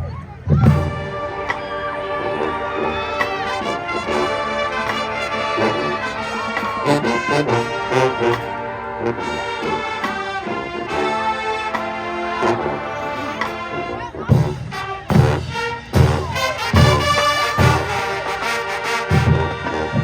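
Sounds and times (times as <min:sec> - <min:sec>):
marching band playing: 0:00.0 - 0:20.0
drum hits: 0:14.3 - 0:18.0.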